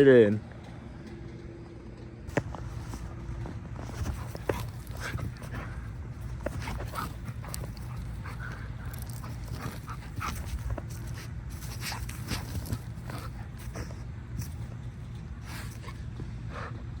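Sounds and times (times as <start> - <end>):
steady low rumble: 0.0 - 17.0
dog snuffling: 2.3 - 16.7
dog crunching through snow: 2.4 - 14.7.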